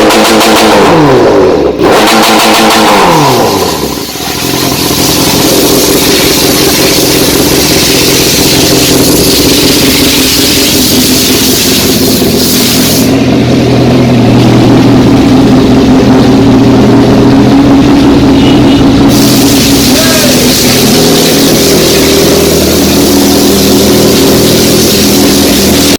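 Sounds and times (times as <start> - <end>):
motorcycle engine running loud: 0.0 - 25.9
hiss: 3.8 - 13.2, 19.1 - 25.9.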